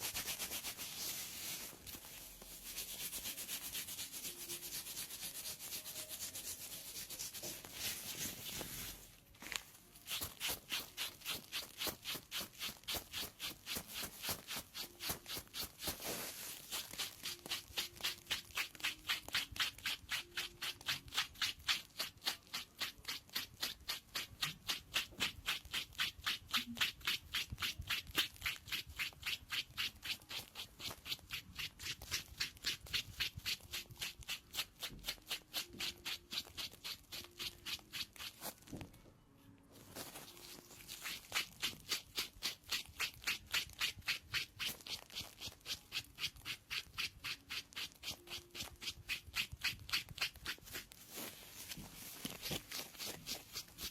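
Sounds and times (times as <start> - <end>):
blade scraping skin: 16.7 - 38.6, 40.2 - 51.0, 51.6 - 53.9.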